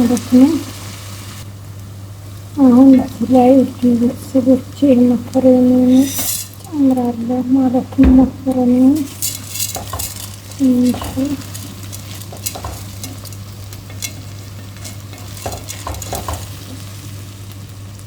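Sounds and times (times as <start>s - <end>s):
vegetables sizzling in oil: 0.0s - 18.0s
spoon knocking against pot: 12.3s - 13.2s, 14.8s - 16.6s.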